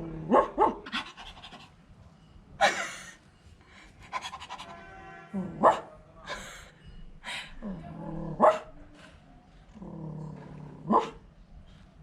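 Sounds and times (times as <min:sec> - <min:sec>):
dog barking: 0:00.2 - 0:01.0, 0:05.4 - 0:06.0, 0:08.4 - 0:08.7, 0:10.8 - 0:11.2
dog panting: 0:00.9 - 0:01.8, 0:04.0 - 0:04.7.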